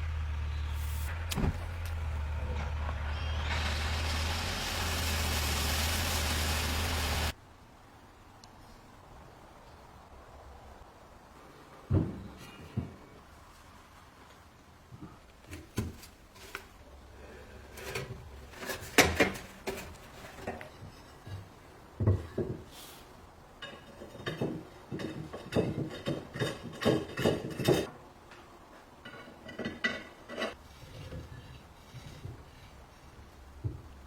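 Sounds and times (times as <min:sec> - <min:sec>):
rubbing and clattering: 0:17.7 - 0:21.2.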